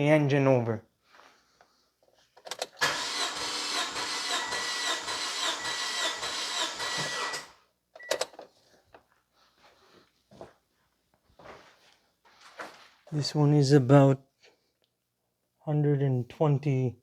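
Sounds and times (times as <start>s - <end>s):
starter motor cranking engine: 2.8s - 7.6s.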